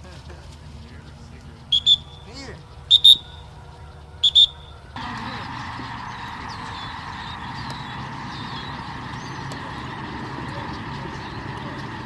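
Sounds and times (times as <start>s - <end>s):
low hum: 0.0s - 12.0s
steady rushing noise: 0.0s - 12.0s
high bird chirps: 0.8s - 5.4s.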